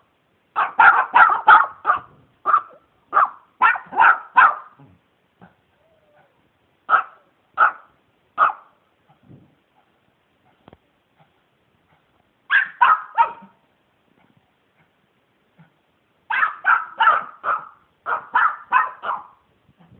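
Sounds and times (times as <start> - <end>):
dog barking: 0.6 - 4.8, 6.2 - 8.8, 12.5 - 13.6, 16.3 - 19.4.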